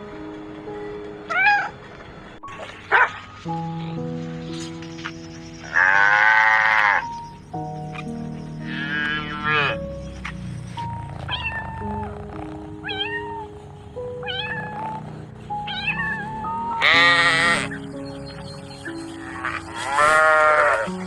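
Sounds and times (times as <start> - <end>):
light background music: 0.0 - 21.0
cat meowing: 1.3 - 1.7, 5.7 - 7.1, 11.2 - 12.2, 12.8 - 13.6, 14.2 - 15.0, 15.6 - 17.7
long wavering animal call: 5.6 - 7.2, 8.6 - 9.9, 14.1 - 17.9.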